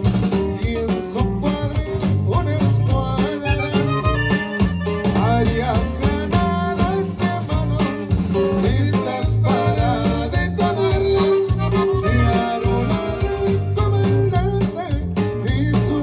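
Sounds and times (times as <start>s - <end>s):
bass line: 0.0s - 16.0s
plucked guitars: 0.0s - 16.0s
person singing: 5.1s - 16.0s.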